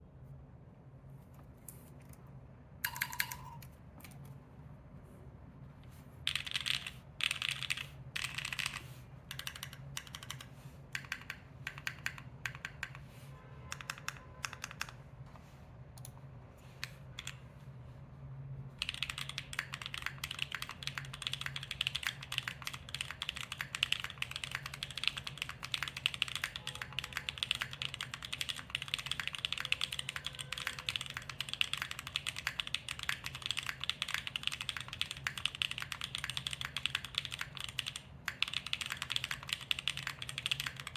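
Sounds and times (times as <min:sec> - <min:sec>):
mechanical keyboard typing: 0:02.8 - 0:04.2, 0:06.3 - 0:13.0, 0:13.7 - 0:15.0, 0:16.8 - 0:17.4, 0:18.8 - 0:40.9.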